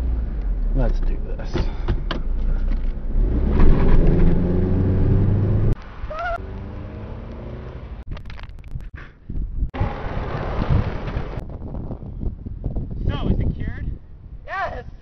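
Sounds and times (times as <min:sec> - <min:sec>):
car engine revving loudly: 0:03.2 - 0:05.8.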